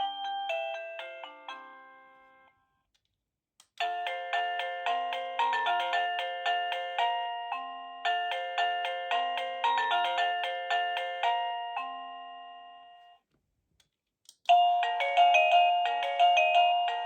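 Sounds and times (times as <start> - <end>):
doorbell chime melody: 0.0 - 2.6, 3.8 - 13.2, 14.5 - 17.0
click: 2.9 - 3.8, 13.8 - 14.5.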